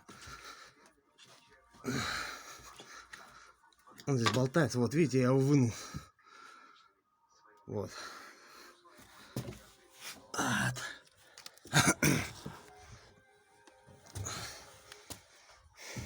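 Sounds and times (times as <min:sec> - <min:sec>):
man clearing his throat: 0:11.7 - 0:12.6
man coughing: 0:11.7 - 0:12.7.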